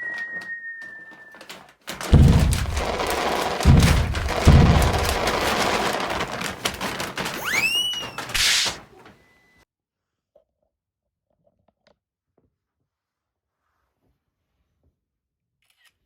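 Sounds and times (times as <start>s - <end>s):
heavy low thuds: 1.9s - 8.9s
loud crashing rumble: 1.9s - 9.1s.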